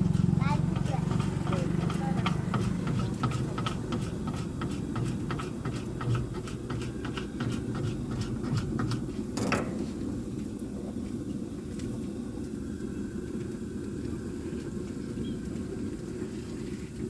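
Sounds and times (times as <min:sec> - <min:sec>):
utensil scrape or clatter: 0:00.0 - 0:10.1.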